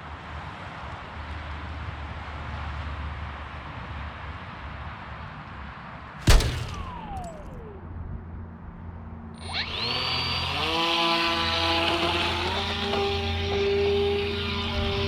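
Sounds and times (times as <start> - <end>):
sharp click: 6.2 - 7.8.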